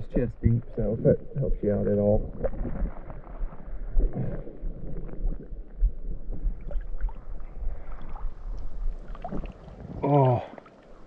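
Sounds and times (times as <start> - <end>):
low rumbling buffets on microphone: 0.0 - 10.2
creek water sloshing: 6.5 - 11.0.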